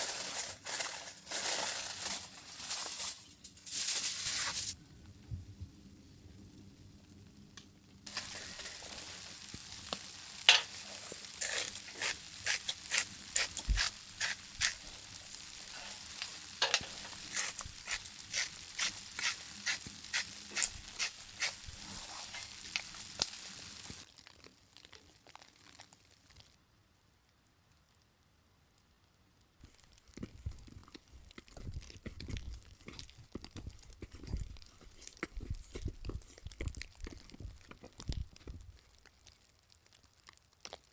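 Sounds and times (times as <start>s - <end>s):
steak sizzling in hot fat: 0.0s - 4.8s, 8.0s - 26.6s.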